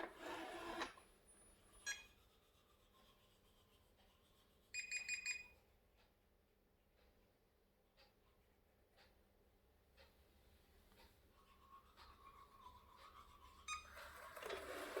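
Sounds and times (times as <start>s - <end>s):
robot vacuum beeping: 0.0s - 1.0s.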